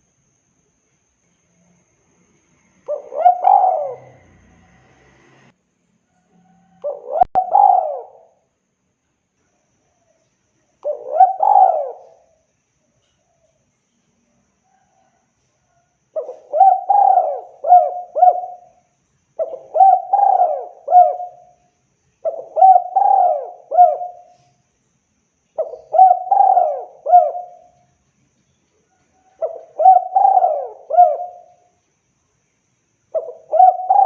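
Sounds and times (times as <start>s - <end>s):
dove cooing: 2.8s - 4.8s, 6.7s - 8.4s, 10.8s - 12.4s, 16.2s - 18.8s, 19.4s - 21.6s, 22.2s - 24.5s, 25.6s - 27.8s, 29.2s - 31.7s, 33.1s - 34.0s.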